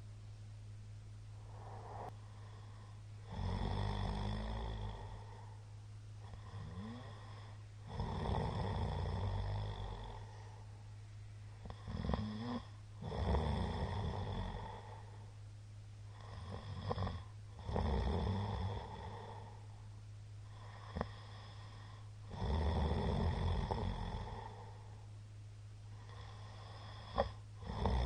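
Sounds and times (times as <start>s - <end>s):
man snoring loudly: 3.2s - 5.4s, 6.3s - 10.3s, 11.7s - 15.0s, 16.2s - 19.6s, 22.3s - 24.7s, 26.1s - 28.0s.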